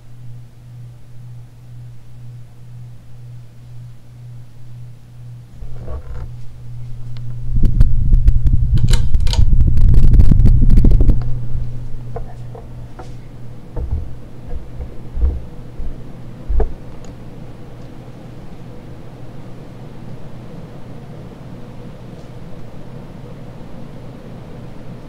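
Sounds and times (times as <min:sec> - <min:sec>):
ceiling fan motor humming: 0:00.0 - 0:25.0
loud low rumble with rustling: 0:05.4 - 0:17.2.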